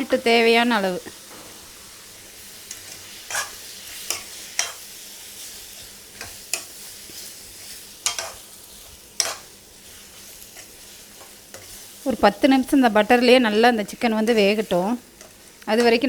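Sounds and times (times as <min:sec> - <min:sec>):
spoon scraping pan: 0:00.0 - 0:12.1
chicken sizzling in butter: 0:00.0 - 0:16.0.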